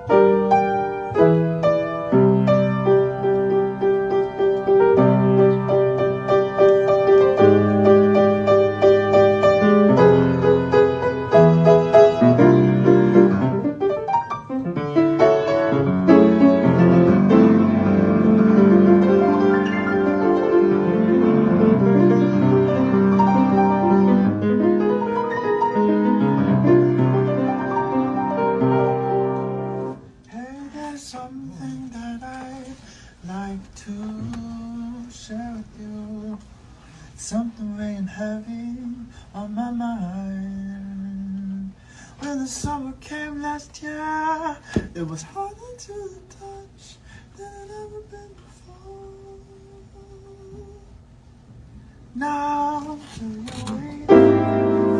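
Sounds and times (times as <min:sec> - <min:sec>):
piano chords and melody: 0:00.0 - 0:30.2, 0:53.6 - 0:54.9.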